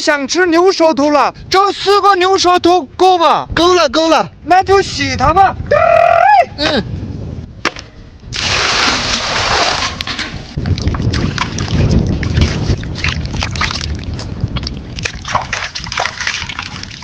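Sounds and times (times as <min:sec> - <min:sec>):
water sloshing and splashing: 0:08.3 - 0:17.0.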